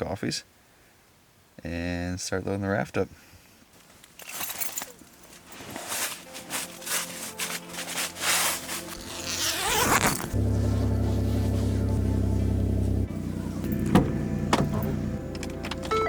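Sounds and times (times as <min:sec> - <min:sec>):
gear rustling and scraping: 0:03.7 - 0:13.0
zipper sweeps: 0:05.6 - 0:12.1
music with heavy bass: 0:06.9 - 0:16.0.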